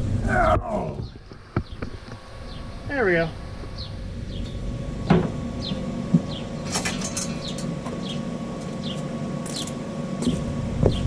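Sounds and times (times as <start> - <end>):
low hum: 0.0 - 11.0
small bird chirping: 3.7 - 4.7, 5.6 - 9.8.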